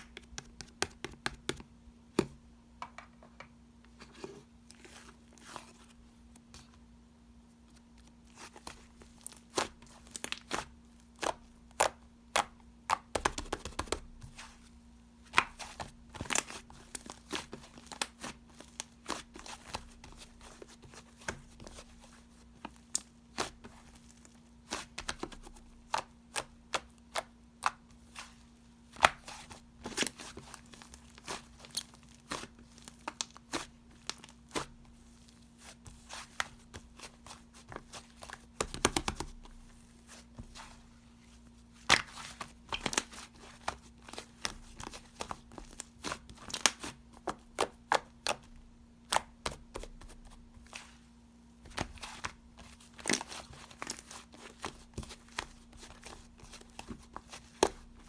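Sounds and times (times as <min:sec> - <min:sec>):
faint steady hum: 0:00.0 - 0:58.0
crinkly material crackling: 0:15.3 - 0:48.5, 0:49.2 - 0:58.0.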